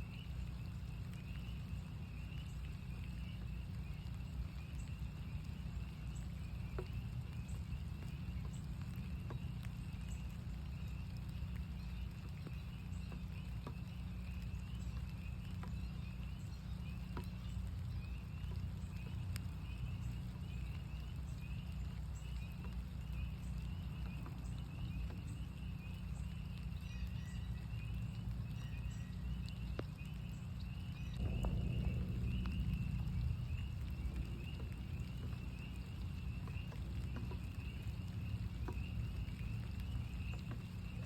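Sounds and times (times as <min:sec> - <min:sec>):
spring peepers chorus: 0:00.0 - 0:41.0
steady low rumble: 0:00.0 - 0:41.0
rush of lower sound: 0:31.2 - 0:35.6.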